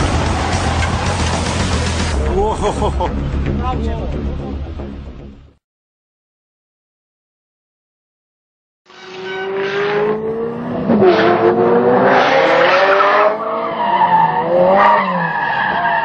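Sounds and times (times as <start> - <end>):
car engine revving: 0.0 - 2.3, 9.1 - 15.3.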